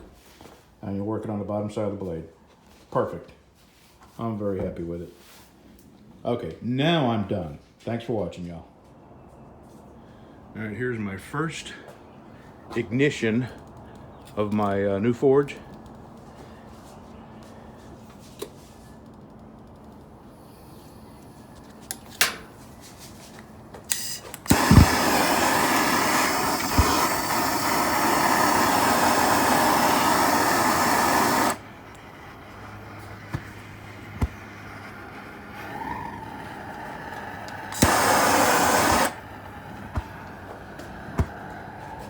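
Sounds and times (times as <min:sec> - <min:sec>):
forge burners hissing: 0:14.4 - 0:42.0
igniter clicks: 0:21.2 - 0:22.6, 0:23.4 - 0:42.0
gas igniting thump: 0:23.9 - 0:35.1, 0:37.5 - 0:41.8.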